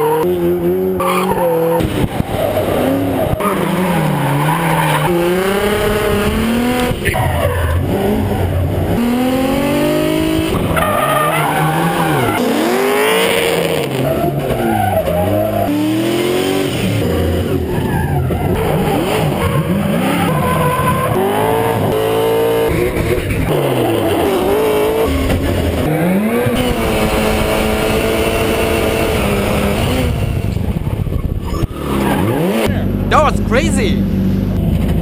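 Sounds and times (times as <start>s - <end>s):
car engines revving: 0.0s - 33.1s
tyres squealing and skidding: 1.0s - 5.2s, 10.8s - 12.6s, 17.6s - 21.6s.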